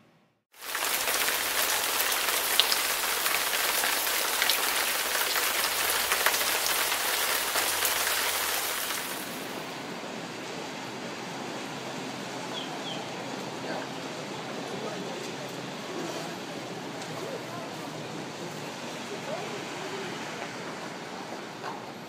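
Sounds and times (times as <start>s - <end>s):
heavy rain: 0.6s - 15.0s.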